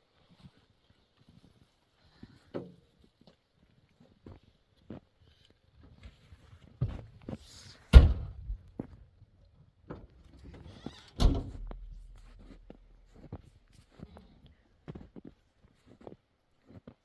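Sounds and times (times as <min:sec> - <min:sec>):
car doors shutting: 0:10.5 - 0:13.0.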